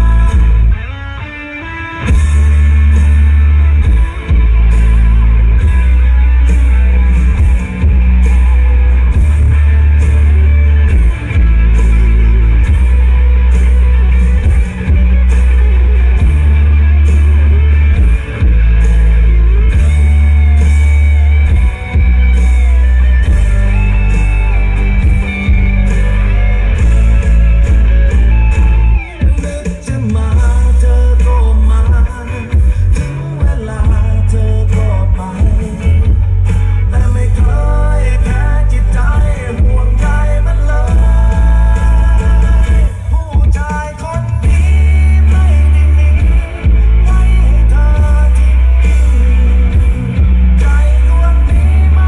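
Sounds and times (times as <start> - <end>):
rock music over loudspeakers: 0.0 - 52.0.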